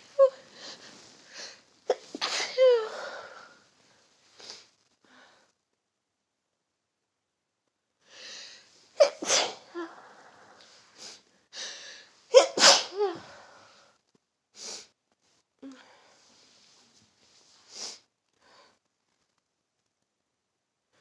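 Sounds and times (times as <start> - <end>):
person breathing: 0.4 - 1.6, 8.0 - 8.8, 9.7 - 12.1
person sneezing: 1.9 - 3.1, 9.0 - 9.9, 12.3 - 13.4.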